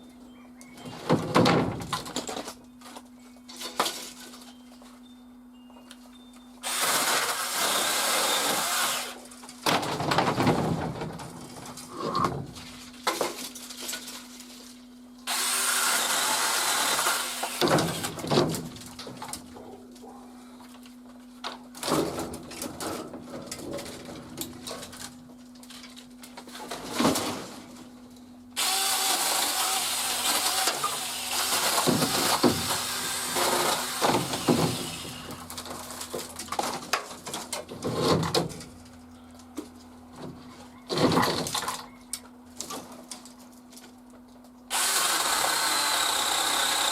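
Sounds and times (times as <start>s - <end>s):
electric pole saw cutting wood: 6.6s - 9.2s, 15.3s - 18.2s, 28.6s - 35.6s, 44.7s - 46.9s.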